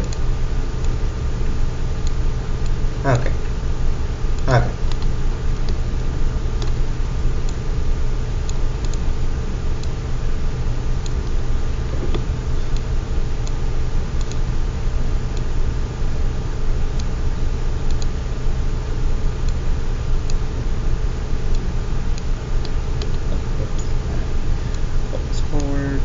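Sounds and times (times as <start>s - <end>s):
low hum and hiss: 0.0s - 26.0s
computer mouse clicks: 4.9s - 5.8s, 6.6s - 6.8s, 8.5s - 9.1s, 14.2s - 14.4s, 17.9s - 18.1s.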